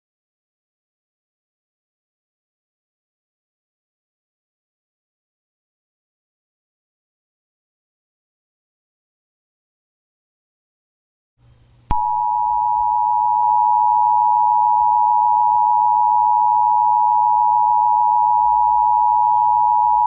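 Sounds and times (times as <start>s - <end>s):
loud two-tone alarm: 11.9s - 20.0s.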